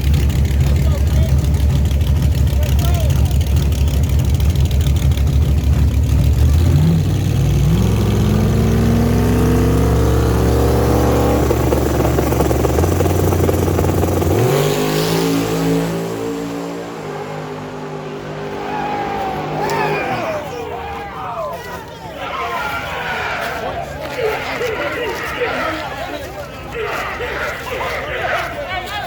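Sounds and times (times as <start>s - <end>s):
race cars accelerating hard: 0.0s - 21.4s.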